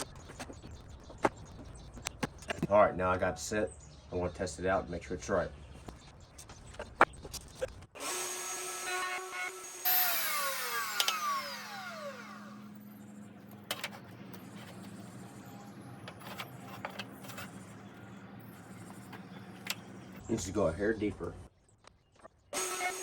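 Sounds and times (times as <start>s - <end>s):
router whining: 7.9s - 20.3s, 22.6s - 23.0s
router winding down: 8.0s - 20.2s, 22.6s - 23.0s.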